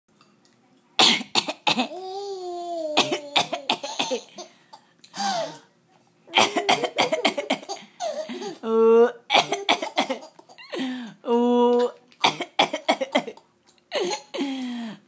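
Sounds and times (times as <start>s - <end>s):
adult coughing: 3.0s - 4.5s, 6.4s - 8.6s, 9.3s - 10.3s, 12.2s - 14.5s
baby laughing: 9.6s - 10.8s.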